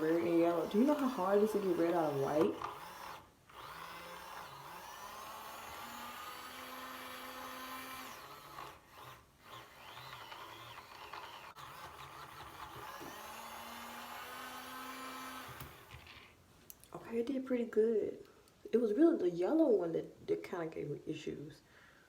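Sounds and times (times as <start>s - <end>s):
small electric motor whirring: 0.0s - 16.3s.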